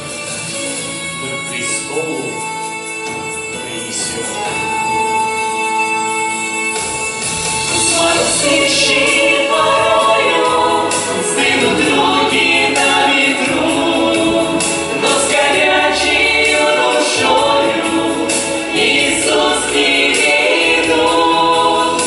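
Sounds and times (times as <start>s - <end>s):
voices singing a hymn in harmony: 7.5s - 22.0s.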